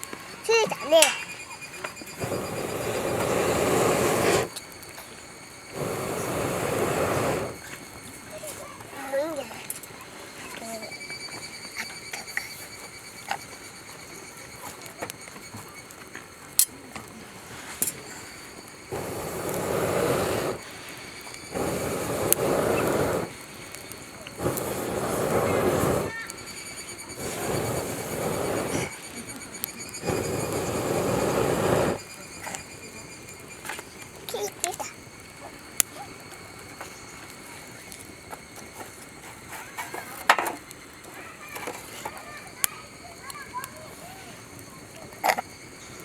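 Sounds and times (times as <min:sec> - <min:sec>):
campfire crackling and popping: 0:00.0 - 0:46.0
rushing air bursts: 0:02.2 - 0:04.6, 0:05.6 - 0:07.7, 0:18.8 - 0:29.0, 0:30.0 - 0:32.1.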